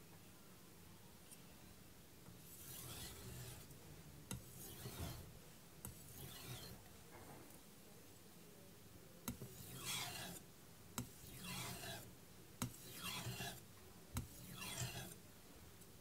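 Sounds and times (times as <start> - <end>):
knife blade scraping on whetstone: 2.4 - 3.7, 4.3 - 5.2, 5.9 - 6.8, 9.3 - 10.4, 11.0 - 13.6, 14.2 - 15.2.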